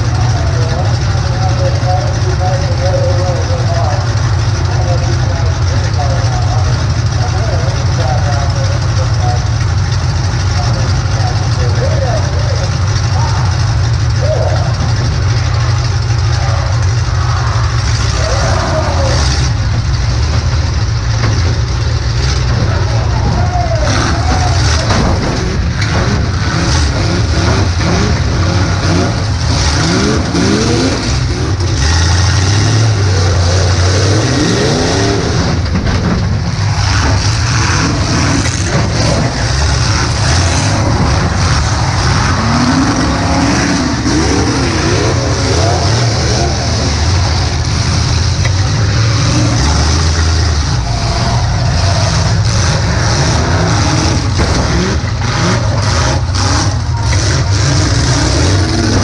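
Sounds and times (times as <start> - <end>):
car engine revving: 0.0 - 59.0
knocks and rattles: 18.7 - 59.0.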